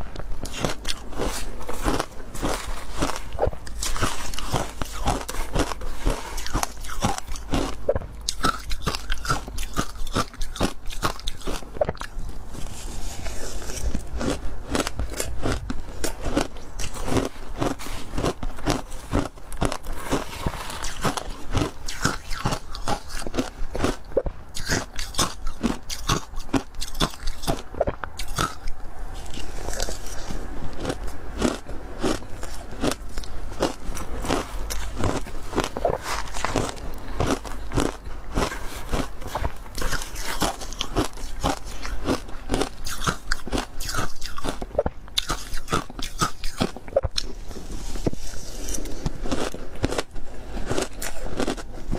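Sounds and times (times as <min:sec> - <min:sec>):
ice crunching: 0:00.4 - 0:24.0, 0:29.2 - 0:44.6.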